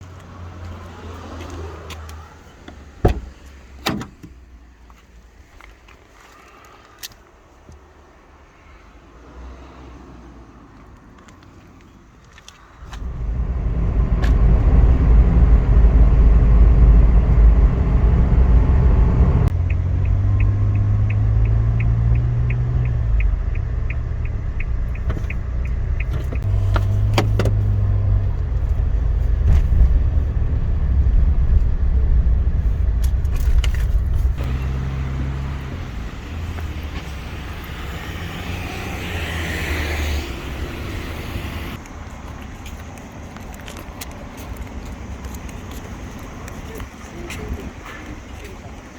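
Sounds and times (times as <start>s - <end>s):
sharp clunks: 3.0s - 4.4s, 23.6s - 27.8s
low car engine rumble: 12.6s - 43.0s.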